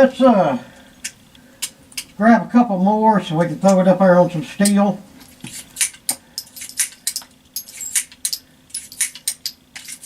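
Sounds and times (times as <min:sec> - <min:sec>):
cartridges clicking and clinking: 0:04.6 - 0:10.0.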